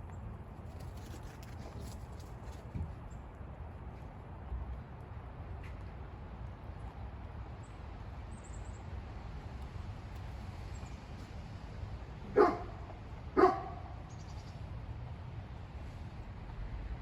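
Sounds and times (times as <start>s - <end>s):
dog barking: 12.3s - 14.0s.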